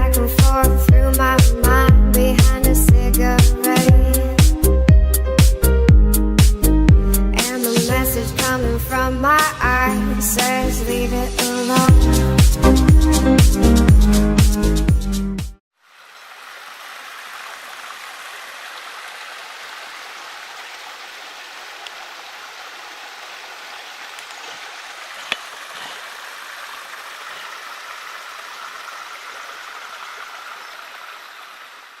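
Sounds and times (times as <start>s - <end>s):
waterfall rushing: 15.8s - 32.0s.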